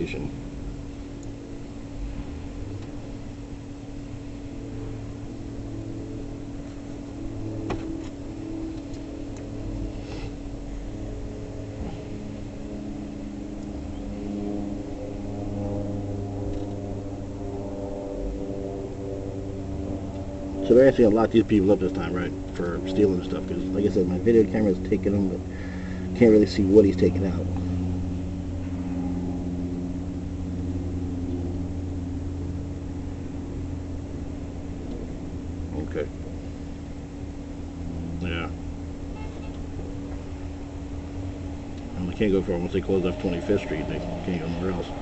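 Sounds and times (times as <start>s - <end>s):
low mechanical hum: 0.0s - 45.0s.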